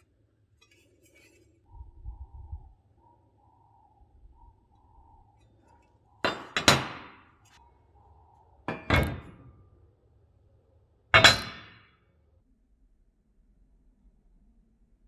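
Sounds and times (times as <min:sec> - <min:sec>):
metal clanking on metal: 0:08.7 - 0:09.5, 0:11.2 - 0:11.8.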